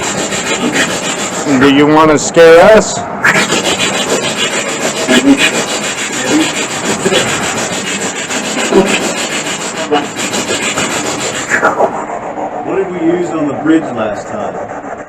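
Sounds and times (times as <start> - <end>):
snatches of radio broadcast: 3.2 - 7.6
chopped radio static: 3.2 - 14.6.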